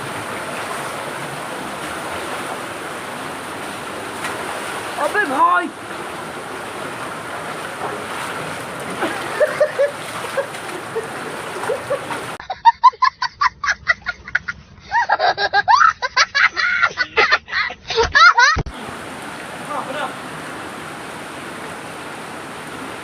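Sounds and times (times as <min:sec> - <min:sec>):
waterfall rushing: 0:00.0 - 0:12.4, 0:18.7 - 0:23.0.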